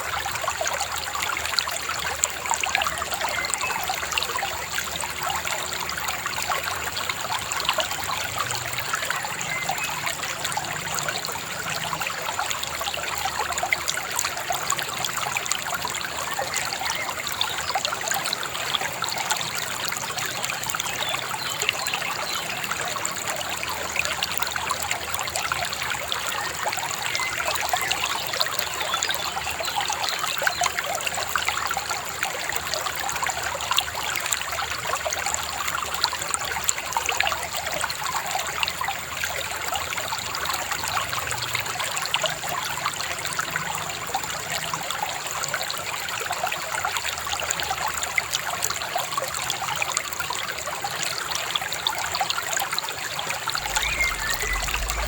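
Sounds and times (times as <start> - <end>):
river babbling: 53.4 - 55.0
faint high whine: 53.5 - 55.0.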